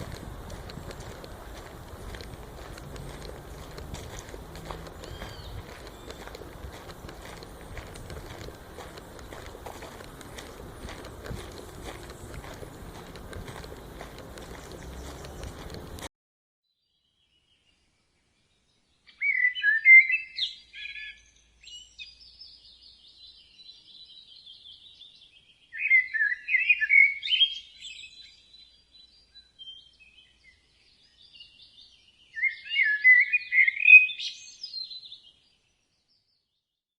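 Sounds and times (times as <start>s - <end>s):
songbird warbling: 0.0s - 15.8s
faint bird chirping: 0.0s - 16.0s.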